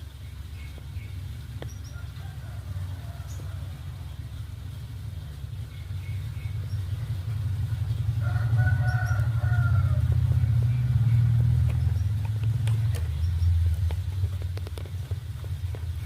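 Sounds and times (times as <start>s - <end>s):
low steady rumble: 0.0s - 16.0s
distant rooster crowing: 1.8s - 4.2s, 8.1s - 10.6s.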